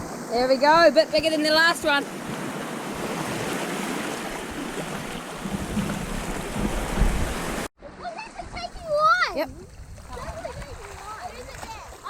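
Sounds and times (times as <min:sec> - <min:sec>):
sea surf washing against rocks: 0:00.0 - 0:07.7
wind buffeting the microphone: 0:04.5 - 0:07.7, 0:08.4 - 0:12.0.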